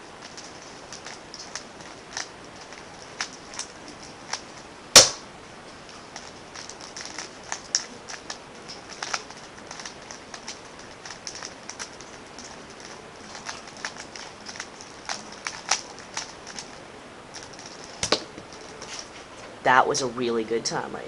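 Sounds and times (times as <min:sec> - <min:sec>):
puzzle cube plastic clicks: 0:00.2 - 0:04.5, 0:06.2 - 0:16.8.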